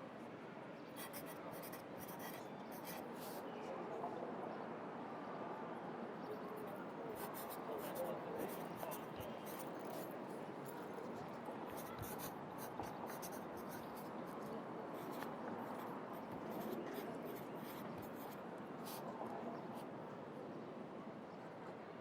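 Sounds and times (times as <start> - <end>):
pencil writing on paper: 1.0 - 3.3, 7.2 - 10.1, 11.7 - 19.1
city traffic hum: 5.2 - 21.9.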